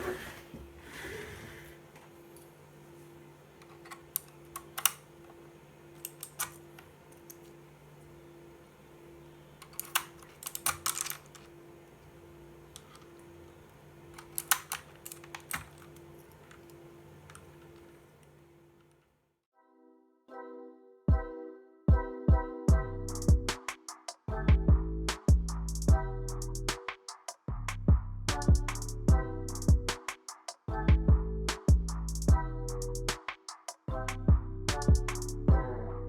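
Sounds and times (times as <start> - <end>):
faint steady hum: 0.0 - 19.4
mechanical keyboard clicks: 9.6 - 11.5, 14.1 - 17.9.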